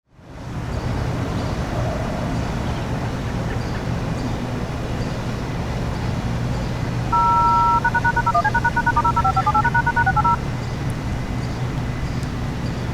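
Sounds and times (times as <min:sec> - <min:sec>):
street traffic rumble: 0:00.3 - 0:12.9
electronic siren activation tones: 0:07.1 - 0:10.4.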